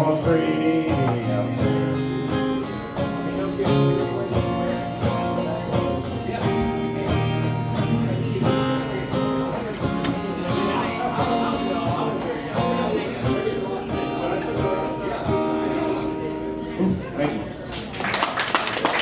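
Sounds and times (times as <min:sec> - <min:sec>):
live country music with guitar: 0:00.0 - 0:17.9.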